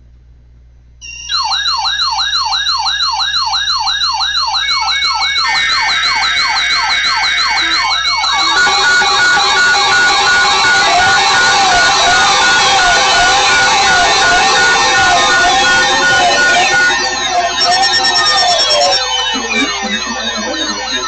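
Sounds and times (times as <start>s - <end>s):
beeping tone: 1.0s - 21.0s
electronic siren yelping: 1.0s - 21.0s
steady tones: 5.5s - 21.0s.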